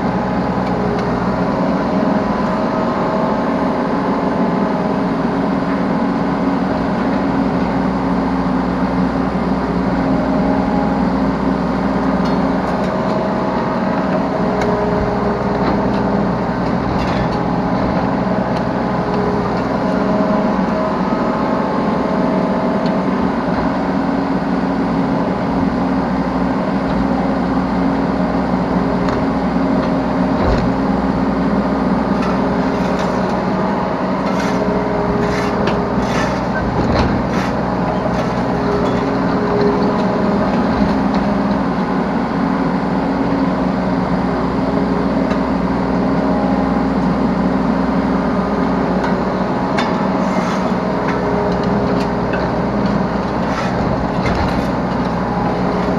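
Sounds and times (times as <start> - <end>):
diesel excavator engine running: 0.0 - 55.9
sharp knocks and clatters: 32.1 - 40.0, 49.0 - 55.9.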